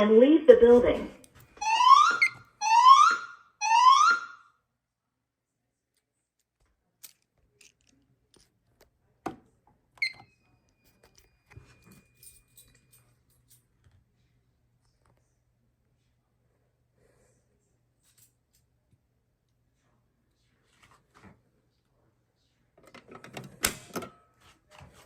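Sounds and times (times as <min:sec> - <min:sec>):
spoken evacuation messages: 0:00.0 - 0:03.2
fire alarm whoop tone: 0:01.6 - 0:04.5.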